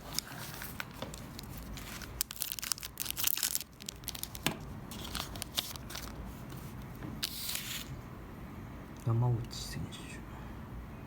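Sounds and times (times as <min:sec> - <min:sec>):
wrapper crackling: 0:00.1 - 0:06.2.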